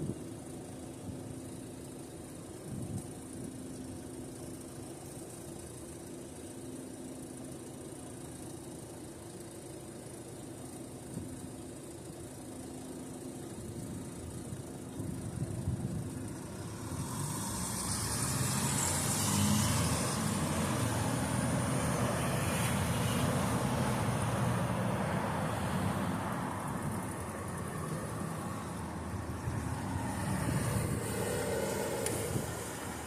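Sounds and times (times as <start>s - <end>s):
vehicles driving past: 16.4s - 33.0s.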